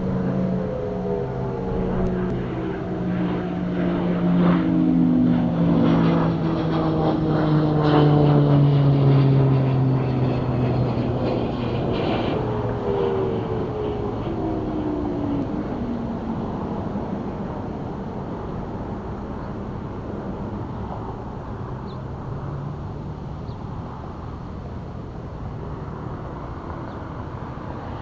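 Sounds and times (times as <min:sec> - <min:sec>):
distant warning sirens winding down: 0:00.0 - 0:18.1.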